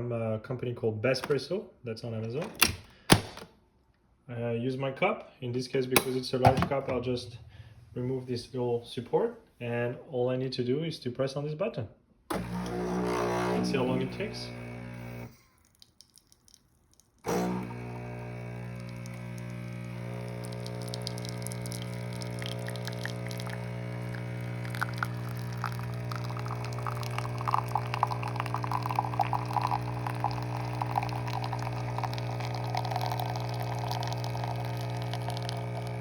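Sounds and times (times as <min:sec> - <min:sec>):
coffee machine pump humming: 0:12.3 - 0:15.4, 0:17.3 - 0:36.0
espresso trickling into cup: 0:12.4 - 0:16.2, 0:17.3 - 0:36.0.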